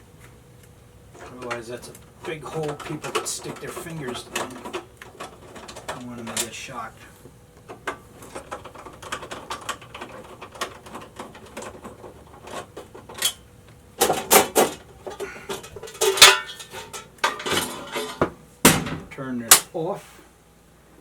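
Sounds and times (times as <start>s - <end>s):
metal parts clattering: 1.2s - 6.6s, 7.8s - 13.4s, 14.0s - 18.2s.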